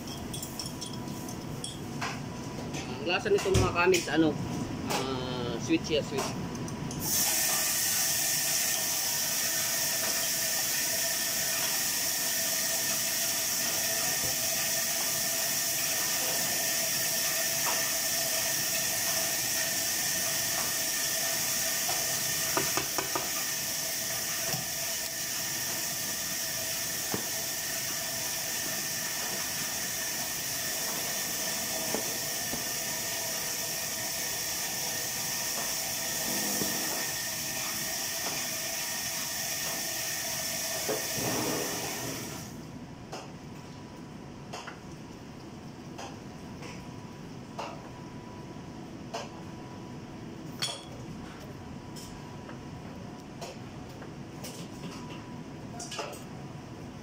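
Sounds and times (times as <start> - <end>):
chicken sizzling: 7.0 - 42.5.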